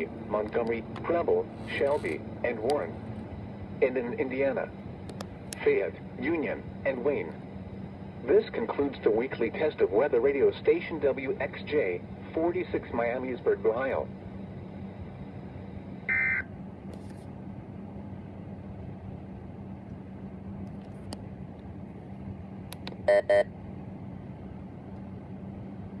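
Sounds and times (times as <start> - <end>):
radio receiver hiss and hum: 0.0 - 17.4
loud electronic beeps: 16.1 - 16.5, 23.1 - 23.5.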